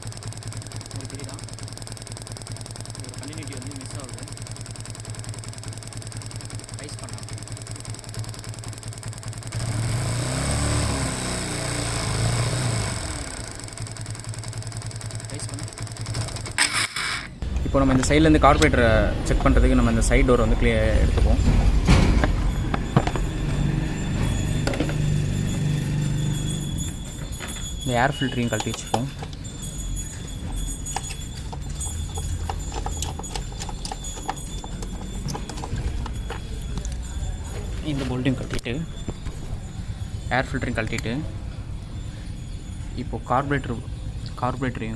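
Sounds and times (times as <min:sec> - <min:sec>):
motorcycle engine idling and revving: 0:00.0 - 0:44.9
hand tools clicking and knocking: 0:21.0 - 0:39.6.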